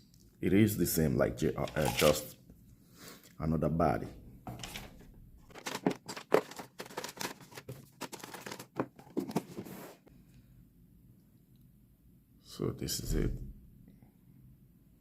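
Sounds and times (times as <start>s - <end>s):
trimmer packaging clicks and rustles: 1.6s - 2.3s, 4.5s - 9.5s.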